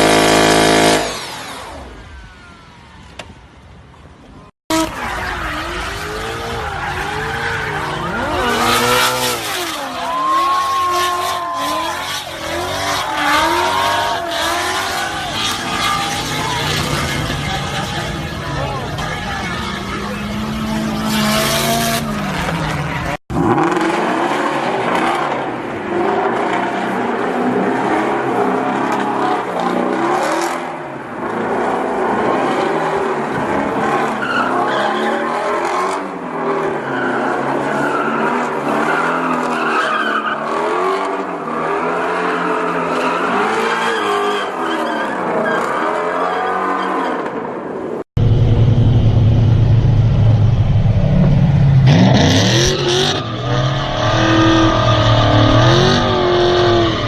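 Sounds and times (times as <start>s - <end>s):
car engine revving: 0.0s - 1.9s, 4.7s - 30.6s, 48.2s - 57.0s
tyres squealing and skidding: 4.4s - 23.8s, 31.4s - 47.8s, 51.9s - 57.0s.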